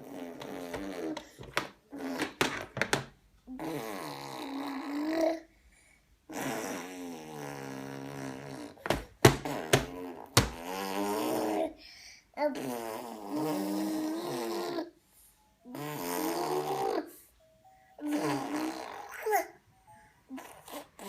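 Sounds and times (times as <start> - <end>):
baby making buzzy vocal sounds: 3.5 - 5.5, 6.3 - 8.8, 9.5 - 11.8, 12.4 - 14.9, 18.0 - 19.6.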